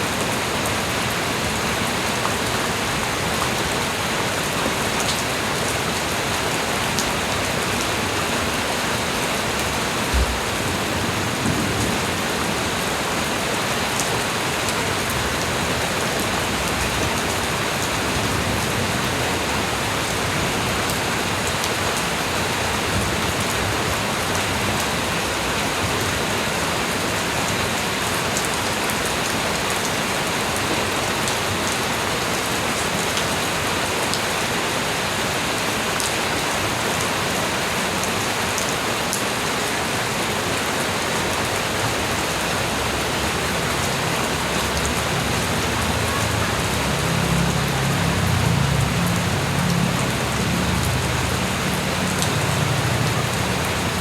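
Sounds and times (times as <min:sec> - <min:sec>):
light rain falling: 0:00.0 - 0:54.0
low thump: 0:10.1 - 0:10.7.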